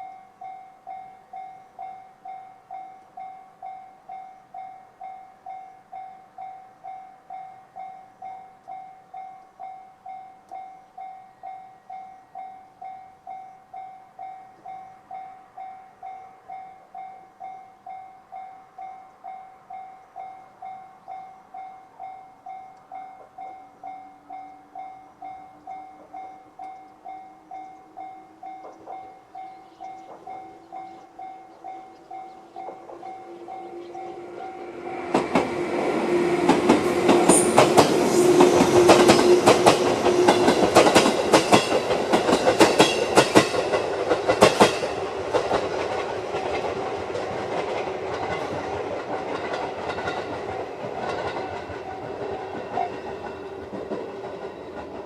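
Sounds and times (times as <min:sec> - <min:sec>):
level crossing warning bell: 0:00.0 - 0:35.1
approaching train hum: 0:00.0 - 0:55.0
rail noise: 0:00.0 - 0:55.0.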